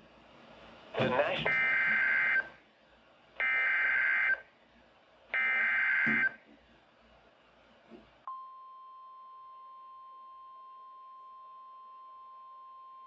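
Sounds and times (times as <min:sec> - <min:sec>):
steady warning alarm tone: 0:01.5 - 0:02.5, 0:03.4 - 0:04.4, 0:05.4 - 0:06.4.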